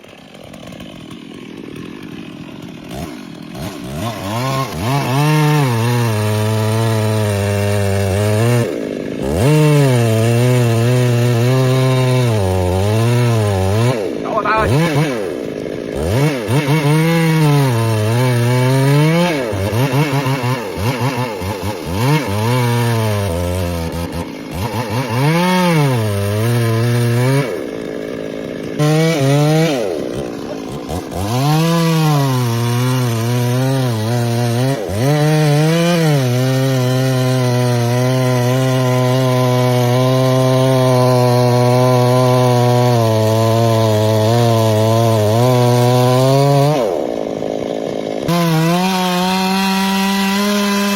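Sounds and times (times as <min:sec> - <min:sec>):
chainsaw cutting wood: 0:00.0 - 0:50.9
chainsaw engine revving: 0:00.0 - 0:50.9.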